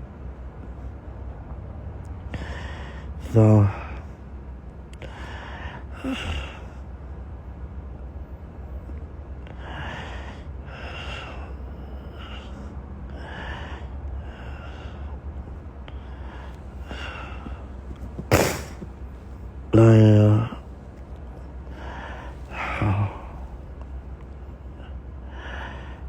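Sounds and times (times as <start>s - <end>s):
low steady hum: 0.0s - 26.0s
man breathing: 2.2s - 3.2s, 5.0s - 6.9s, 9.4s - 19.0s, 21.6s - 23.8s, 24.4s - 26.0s.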